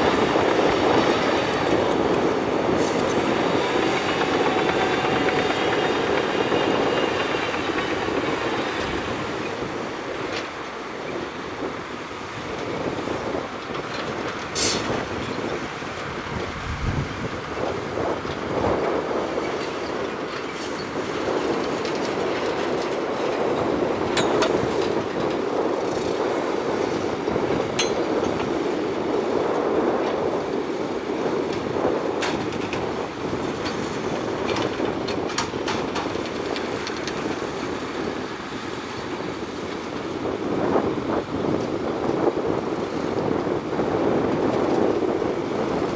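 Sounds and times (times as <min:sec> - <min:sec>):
bulldozer diesel engine under load: 0:00.0 - 0:45.9
steel tracks clattering and squealing: 0:00.0 - 0:45.9
sharp clanks: 0:27.7 - 0:28.5.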